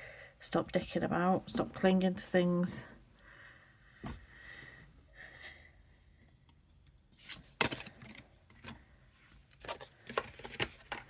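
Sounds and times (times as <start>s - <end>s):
playing cards rustling and tapping: 9.5s - 11.0s.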